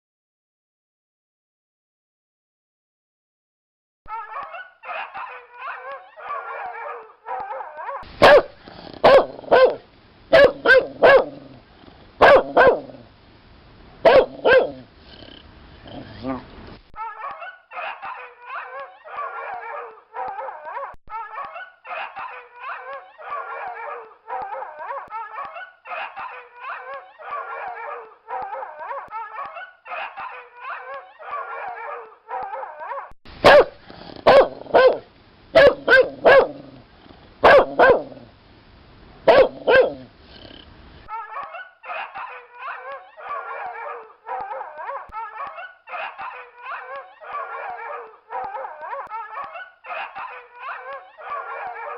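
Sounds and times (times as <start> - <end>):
dog barking and yipping: 4.1 - 11.5, 12.2 - 13.0, 14.0 - 14.8, 17.0 - 36.8, 37.4 - 38.3, 39.3 - 40.1, 41.0 - 51.9
loud sharp dog barks: 6.2 - 11.5, 12.2 - 13.0, 14.0 - 14.8, 31.2 - 36.7, 37.4 - 38.2, 39.3 - 40.1.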